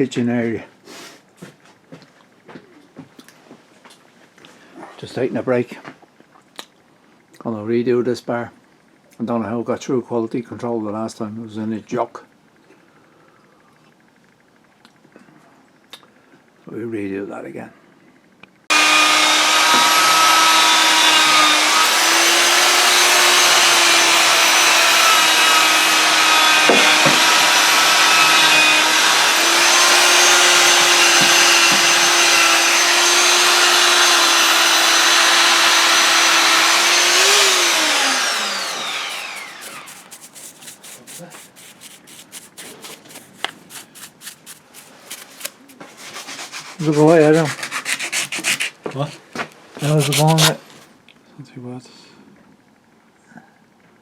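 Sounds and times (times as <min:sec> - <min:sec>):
power sander running: 0:18.7 - 0:49.1, 0:49.8 - 0:50.6
hand-sanding strokes: 0:18.7 - 0:50.6.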